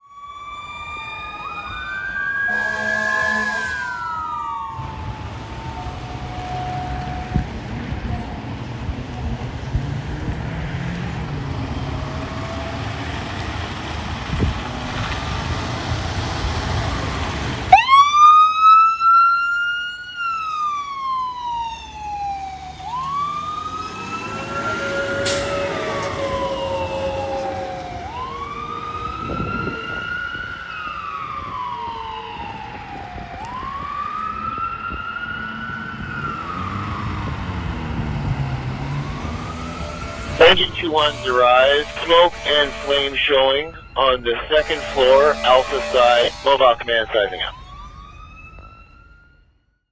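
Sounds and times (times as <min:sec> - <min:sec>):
siren wailing: 0:00.0 - 0:07.4, 0:17.7 - 0:34.9, 0:39.0 - 0:49.4
fire truck engine rumbling: 0:00.5 - 0:18.4, 0:21.3 - 0:48.8.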